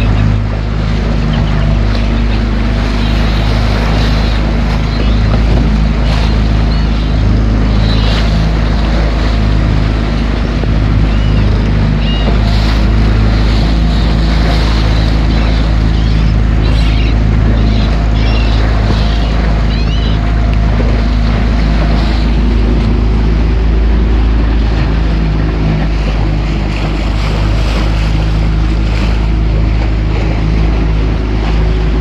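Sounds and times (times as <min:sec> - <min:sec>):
wind noise on microphone: 0:00.0 - 0:23.7
large engine humming: 0:00.0 - 0:32.0
faint high-pitched calls: 0:15.1 - 0:20.3.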